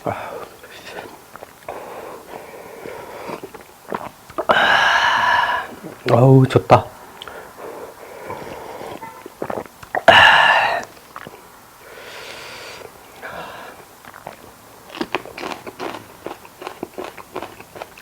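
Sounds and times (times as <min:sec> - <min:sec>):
person chewing crunchy food: 0:00.0 - 0:06.1, 0:07.1 - 0:11.5, 0:12.1 - 0:18.0
sharp breathy exhale: 0:04.5 - 0:05.8, 0:10.1 - 0:10.9.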